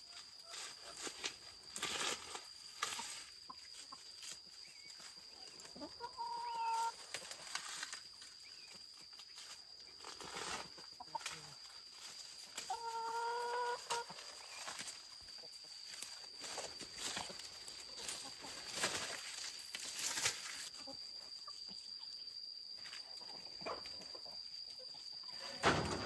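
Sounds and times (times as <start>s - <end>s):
chicken calling: 5.0s - 7.0s, 12.6s - 14.7s.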